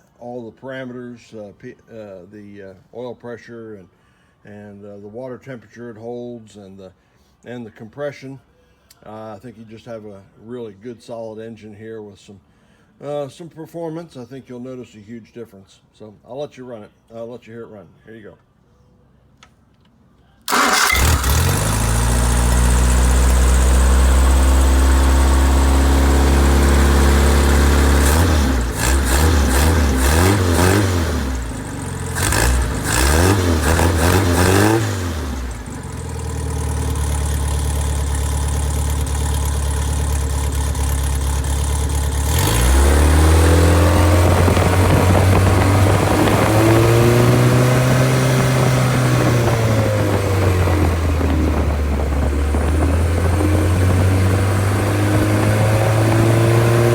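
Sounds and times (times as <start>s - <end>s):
engine running and revving: 20.5s - 56.9s.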